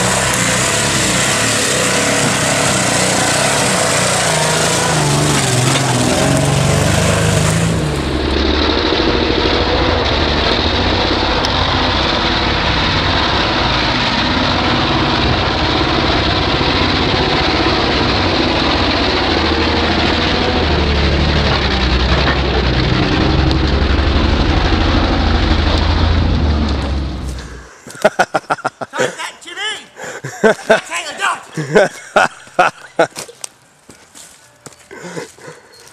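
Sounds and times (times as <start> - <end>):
car engine running loud: 0.0 - 27.8.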